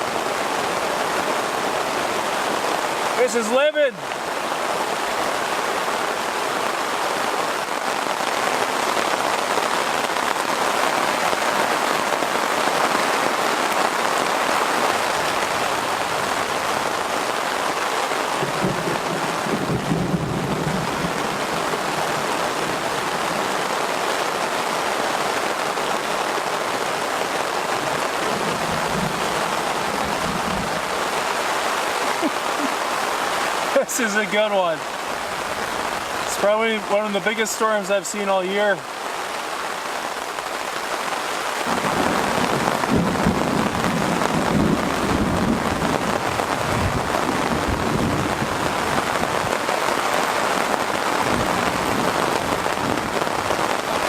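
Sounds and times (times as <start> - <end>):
heavy rain falling: 0.0 - 54.0
thunder rumbling: 18.2 - 23.6, 27.7 - 31.3, 41.6 - 54.0.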